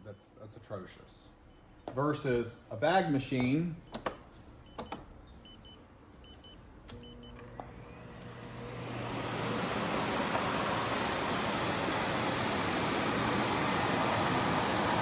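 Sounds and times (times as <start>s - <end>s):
short electronic beeps: 1.5s - 1.9s, 3.8s - 7.4s
vacuum cleaner running: 7.4s - 15.0s.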